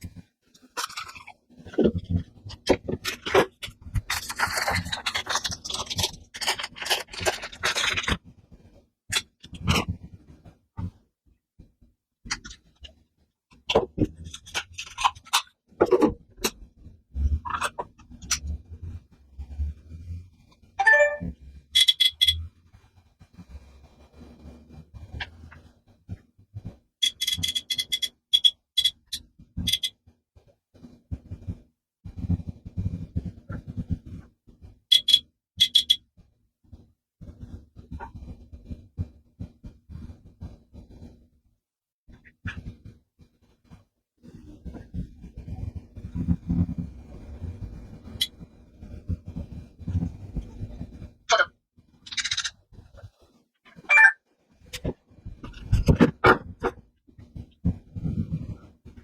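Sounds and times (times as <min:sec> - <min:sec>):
camera and packaging handled: 0:03.0 - 0:08.2
short electronic beeps: 0:20.8 - 0:21.3, 0:53.9 - 0:54.2.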